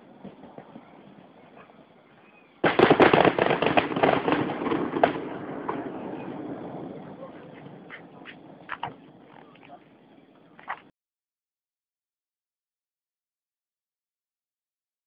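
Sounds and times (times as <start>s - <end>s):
fireworks bursting: 0.0s - 10.8s.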